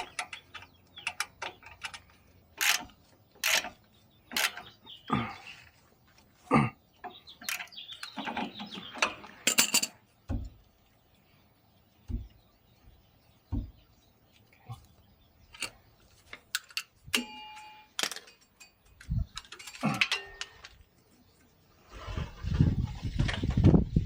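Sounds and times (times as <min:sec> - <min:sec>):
metal tools clicking and knocking: 0:00.0 - 0:04.8, 0:07.0 - 0:10.1, 0:15.5 - 0:20.8.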